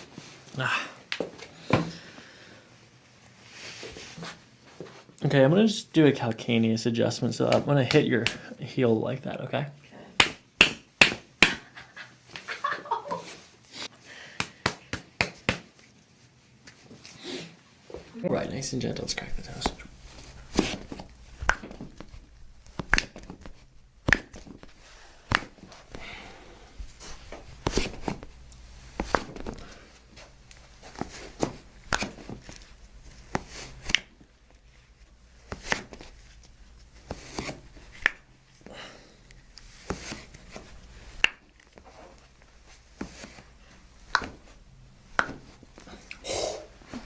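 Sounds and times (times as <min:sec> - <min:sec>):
toe joints cracking: 0:18.6 - 0:47.0.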